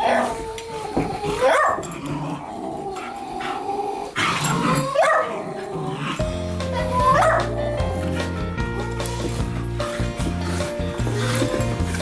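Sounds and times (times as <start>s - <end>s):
dog whining cries: 0.0s - 1.9s, 3.6s - 5.4s, 6.7s - 9.6s
dogs growling: 0.0s - 12.0s.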